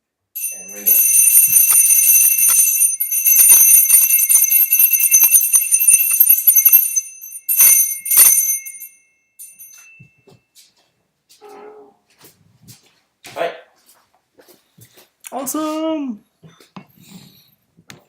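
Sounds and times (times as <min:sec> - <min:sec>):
bike bell ringing with rattling clapper: 0:00.4 - 0:10.2.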